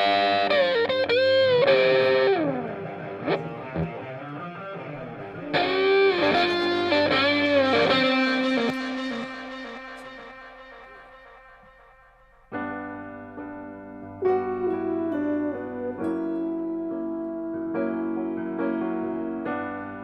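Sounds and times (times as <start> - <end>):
distorted electric guitar: 0.0 - 12.8.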